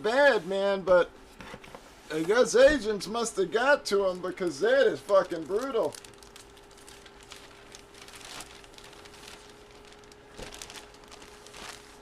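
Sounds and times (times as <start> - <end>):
faint electrical hum: 0.0 - 12.0
cards and packaging rustling: 5.0 - 12.0.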